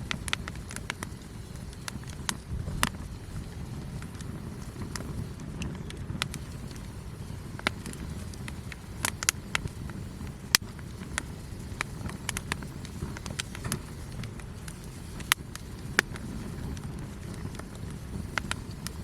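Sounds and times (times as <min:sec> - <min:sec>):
campfire crackling: 0:00.0 - 0:19.0
low rumble of burning fire: 0:00.0 - 0:19.0
sharp pops of burning wood: 0:00.0 - 0:19.0.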